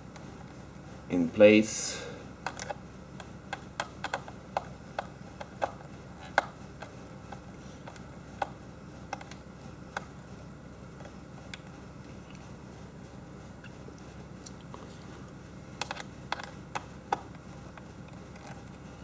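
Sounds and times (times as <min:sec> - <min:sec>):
laptop parts clicking: 0:02.4 - 0:10.1, 0:15.8 - 0:18.8.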